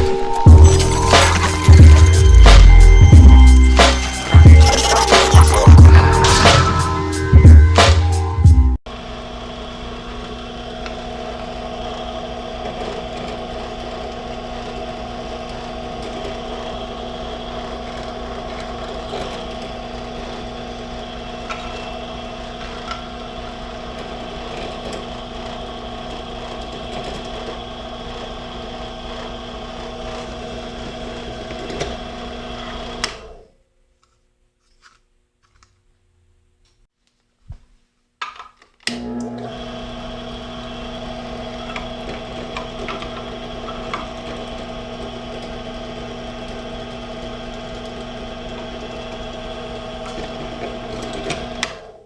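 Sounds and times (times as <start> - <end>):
electric drill motor running: 9.2 - 33.1, 38.9 - 52.0.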